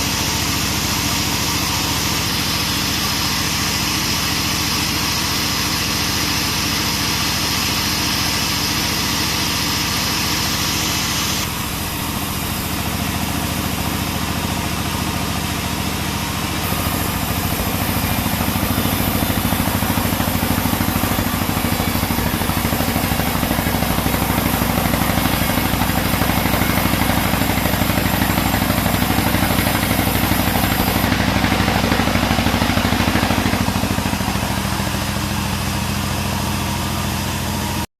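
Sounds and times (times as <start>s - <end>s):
bandsaw machinery humming: 0.0s - 37.9s.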